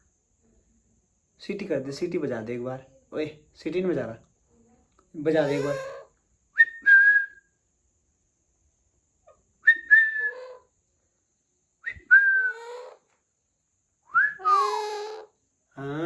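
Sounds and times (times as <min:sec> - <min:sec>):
parakeet whistling and squawking: 0:05.4 - 0:06.1, 0:09.7 - 0:10.7, 0:12.4 - 0:13.1, 0:14.3 - 0:15.3.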